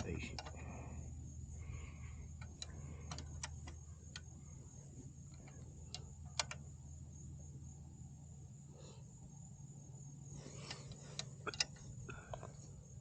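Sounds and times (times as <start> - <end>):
hand tools clicking and tapping: 2.3 - 4.3.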